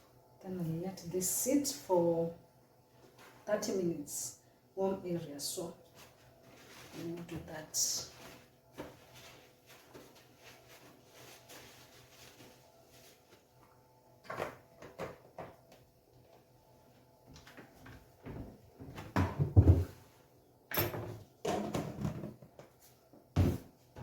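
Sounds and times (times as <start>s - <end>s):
cupboard doors and dishes clunking: 18.3s - 20.0s.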